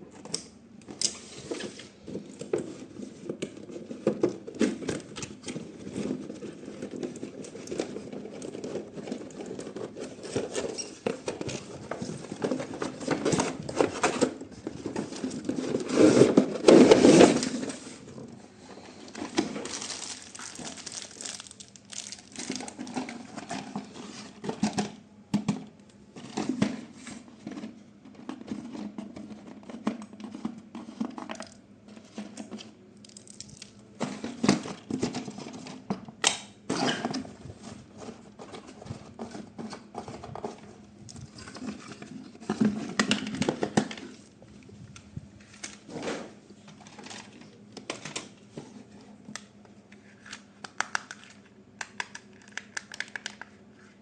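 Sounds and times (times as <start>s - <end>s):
packaging crinkling: 19.0s - 23.8s, 33.0s - 33.8s.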